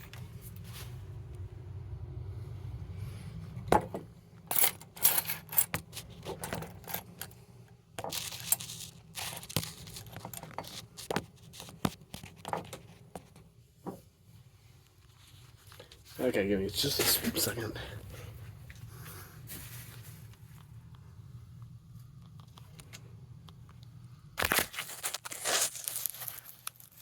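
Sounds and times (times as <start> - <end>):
low steady hum: 0.0 - 26.9
small hard parts clicking and rattling: 3.7 - 7.4, 8.0 - 13.4
rustling: 24.4 - 27.0.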